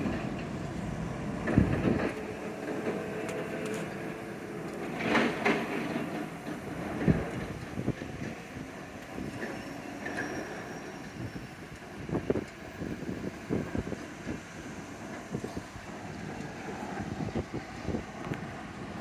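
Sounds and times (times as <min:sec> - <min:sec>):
freight train rumbling: 0:00.0 - 0:19.0
wheels clunking over rail joints: 0:00.0 - 0:19.0
wind on microphone: 0:00.9 - 0:02.4, 0:06.8 - 0:09.6, 0:11.2 - 0:19.0.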